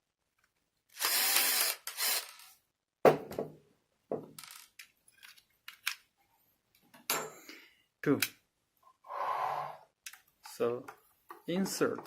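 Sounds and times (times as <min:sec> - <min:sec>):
power screwdriver whirring: 0:01.0 - 0:02.5.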